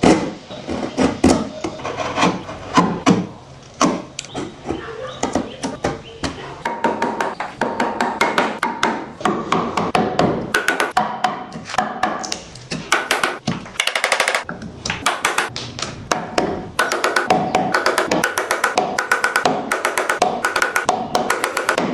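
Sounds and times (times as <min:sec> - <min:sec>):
hammering on wood: 0:05.2 - 0:12.3, 0:12.9 - 0:21.9.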